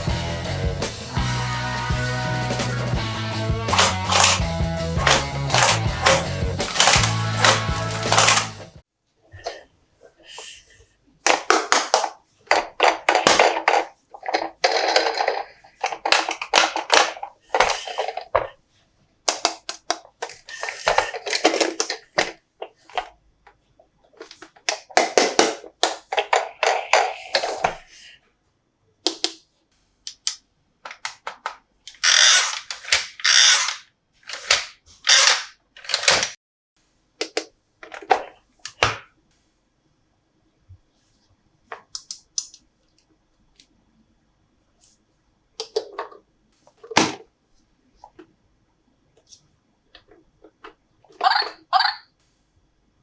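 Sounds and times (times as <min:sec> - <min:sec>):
plastic packaging crinkling and clicking: 0:05.0 - 0:08.7.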